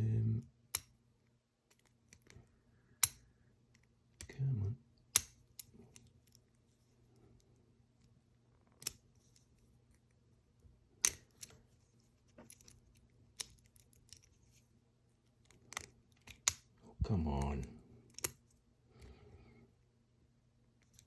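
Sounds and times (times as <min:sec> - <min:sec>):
faint steady hum: 0:00.0 - 0:21.0
metallic clicks of lock cylinder: 0:11.0 - 0:11.6, 0:18.1 - 0:18.4.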